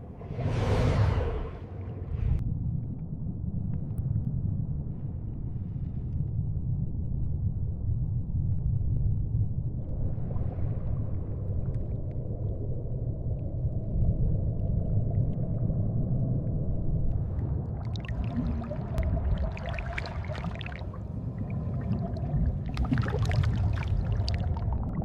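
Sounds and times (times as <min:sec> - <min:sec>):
underwater low rumble: 0:00.0 - 0:25.0
bubbling and crackling: 0:09.6 - 0:25.0.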